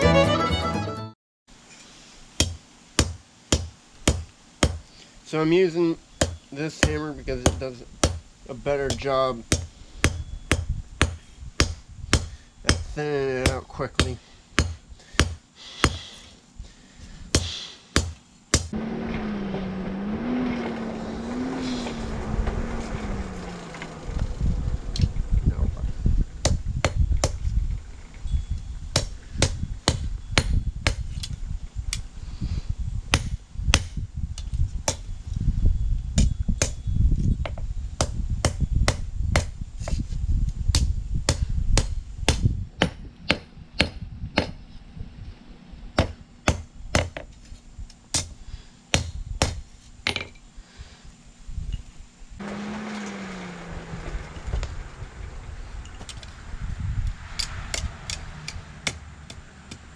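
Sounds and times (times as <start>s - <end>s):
low rumble: 18.7s - 30.7s, 53.2s - 59.9s.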